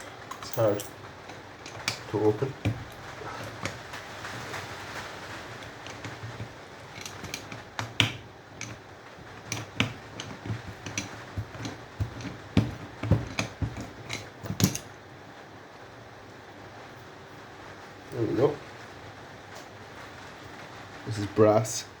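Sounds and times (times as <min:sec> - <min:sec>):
metal on metal clicks and knocks: 0:05.6 - 0:08.8, 0:09.4 - 0:14.9.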